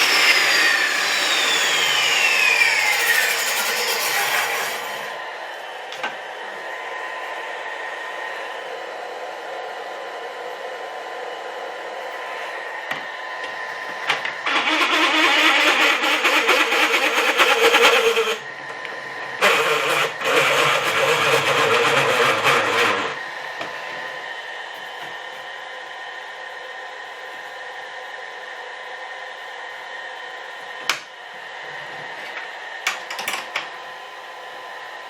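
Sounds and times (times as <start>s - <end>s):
table saw cutting wood: 0.0s - 6.1s, 12.9s - 25.3s
table saw running: 0.0s - 7.9s, 12.9s - 25.5s.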